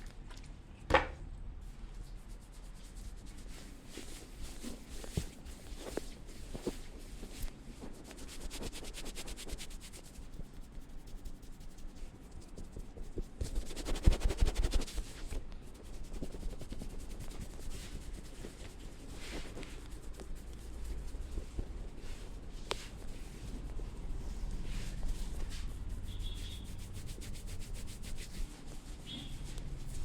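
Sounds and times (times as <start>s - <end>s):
hands rubbing hair and scalp: 2.0s - 30.0s.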